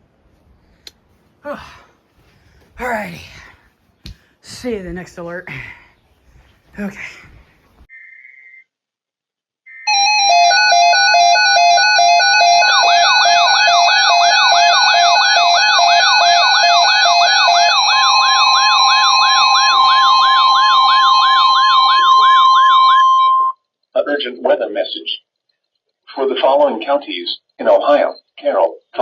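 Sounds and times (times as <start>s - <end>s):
siren-like warble: 9.7s - 23.6s
steady warning tone: 9.7s - 23.6s
on-off beeping: 9.8s - 23.6s
data burst: 10.7s - 23.6s.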